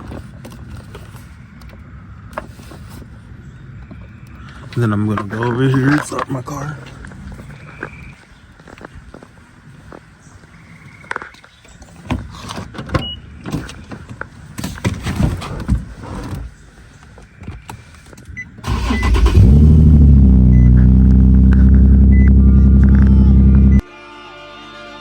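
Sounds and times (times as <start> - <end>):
car engine cranking and idling: 18.6 - 23.8.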